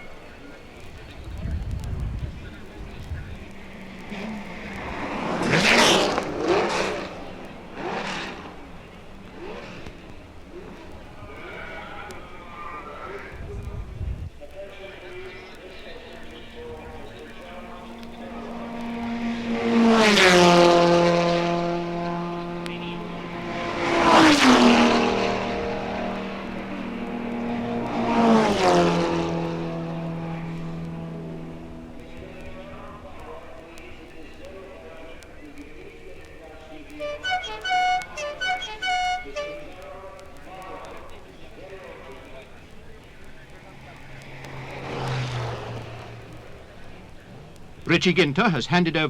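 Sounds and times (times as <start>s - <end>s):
racing cars passing at speed: 0.0s - 49.0s
steady engine drone: 15.9s - 49.0s.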